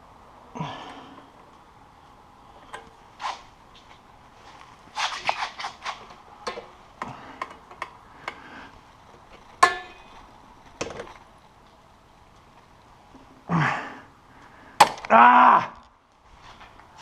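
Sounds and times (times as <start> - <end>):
ringing metal clank: 9.6 - 10.1.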